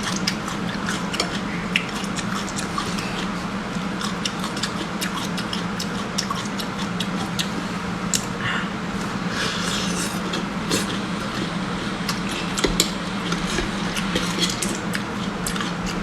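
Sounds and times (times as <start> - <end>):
shells crackling and chewing: 0.0 - 7.5
steady low hum: 0.0 - 16.0.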